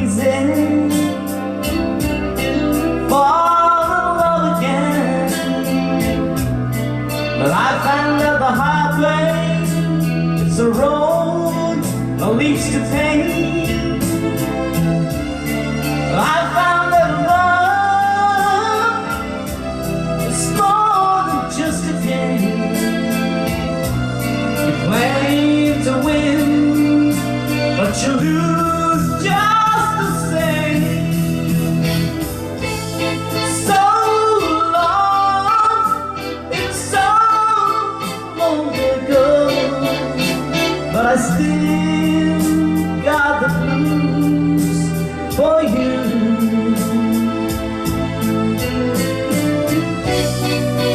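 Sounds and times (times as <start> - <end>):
backing track with bass and beat: 0.0 - 50.9
person singing karaoke: 0.0 - 50.9.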